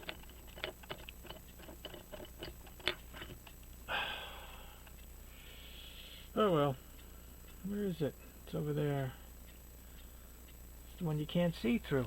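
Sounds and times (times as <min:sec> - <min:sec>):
hand tools clicking on watch parts: 0:00.0 - 0:03.7
person exhaling: 0:03.9 - 0:06.3.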